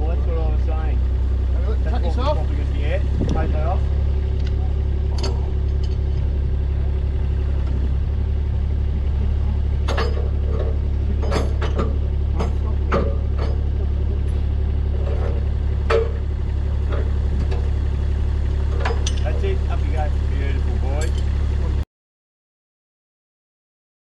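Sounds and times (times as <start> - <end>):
engine idling: 0.0 - 21.8
sharp clanks and knocks: 3.1 - 20.0, 20.8 - 21.4.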